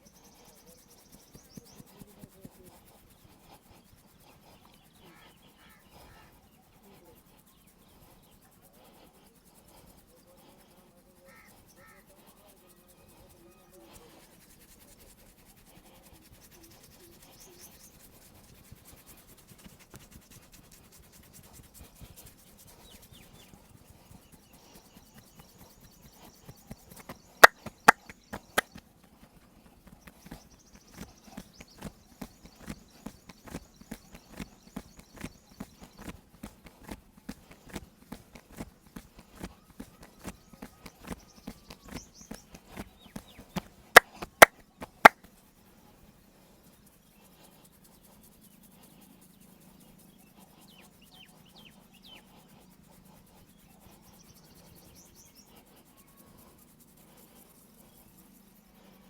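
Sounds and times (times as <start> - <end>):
hands rubbing on skin: 0.0 - 59.0
rhythmic slapping on skin: 0.0 - 59.0
sharp loud snaps: 26.9 - 28.8, 42.7 - 45.2.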